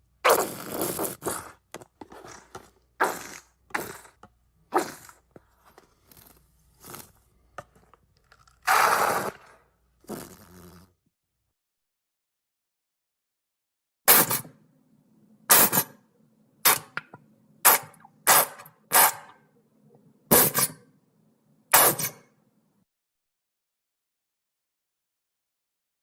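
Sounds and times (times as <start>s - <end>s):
ketchup squirting from bottle: 8.4s - 9.5s.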